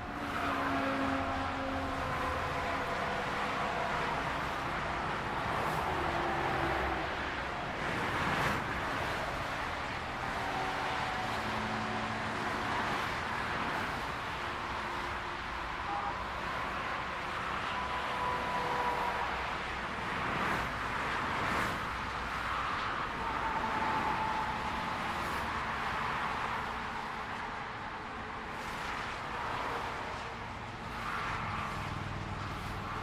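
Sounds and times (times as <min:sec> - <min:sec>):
highway traffic: 0:00.0 - 0:33.0
vehicles passing: 0:00.0 - 0:33.0.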